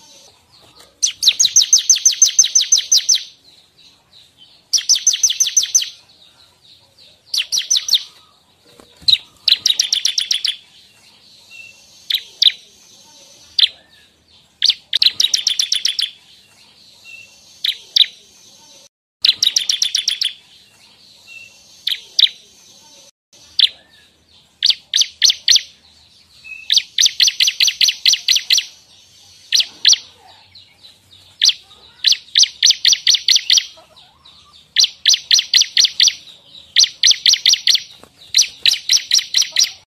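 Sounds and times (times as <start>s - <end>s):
bird rapid dry ticking song: 1.0s - 3.4s, 4.6s - 6.0s, 7.3s - 8.3s, 9.0s - 12.6s, 14.6s - 18.2s, 19.2s - 22.4s, 24.6s - 33.8s, 34.6s - 39.9s
bird sharp chips: 34.8s - 39.9s.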